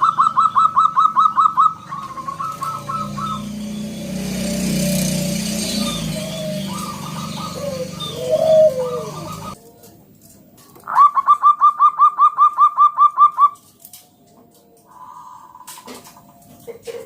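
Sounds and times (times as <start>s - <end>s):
dove cooing: 0.0s - 9.6s, 10.8s - 13.6s.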